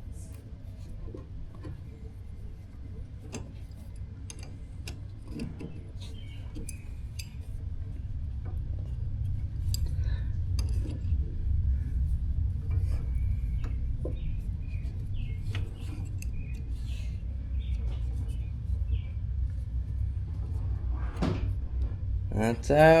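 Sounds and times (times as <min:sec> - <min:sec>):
low rumble: 0:07.0 - 0:23.0.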